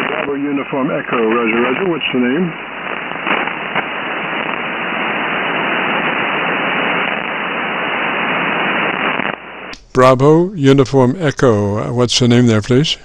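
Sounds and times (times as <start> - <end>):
faint radio crackles: 0.0 - 10.1
radio receiver hiss: 0.0 - 13.0.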